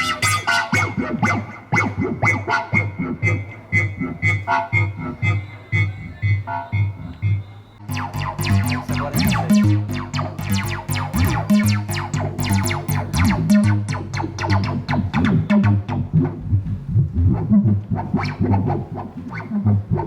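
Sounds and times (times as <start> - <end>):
pulsing synth bass line: 0.0 - 20.0
bright plucked synth notes: 7.8 - 16.6.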